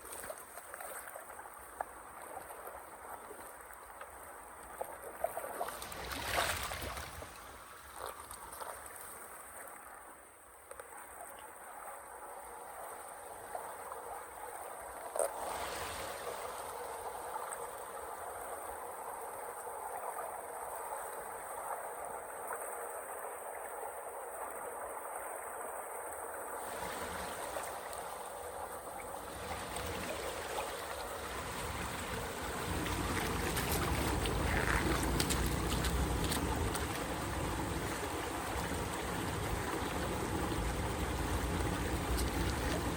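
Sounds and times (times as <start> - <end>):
running water flowing: 0.0 - 10.0, 26.4 - 42.9.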